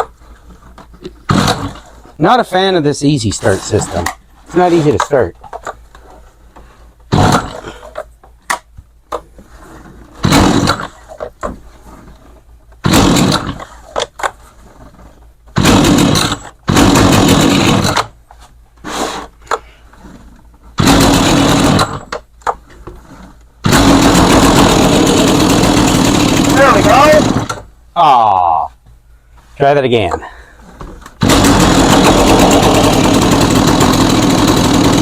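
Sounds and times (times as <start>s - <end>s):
chainsaw engine starting: 1.3s - 1.9s, 10.2s - 11.0s, 12.8s - 13.8s, 15.6s - 18.1s, 20.8s - 22.2s, 23.6s - 27.7s, 31.2s - 35.0s.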